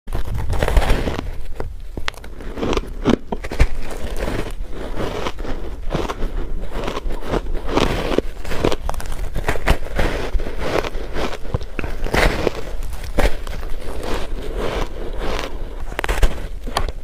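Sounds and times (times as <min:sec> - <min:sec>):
ice being chewed: 0:00.1 - 0:17.0.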